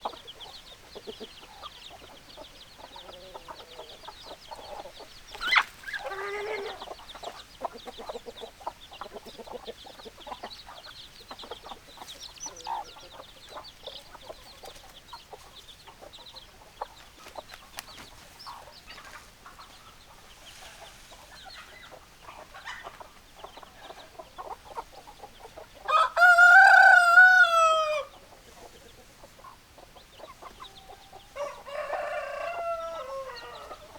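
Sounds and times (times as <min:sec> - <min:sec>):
chickens clucking: 0:00.0 - 0:33.9
chicken squawk: 0:04.6 - 0:08.2
rooster crowing: 0:06.0 - 0:06.8, 0:25.9 - 0:28.2, 0:31.3 - 0:33.9.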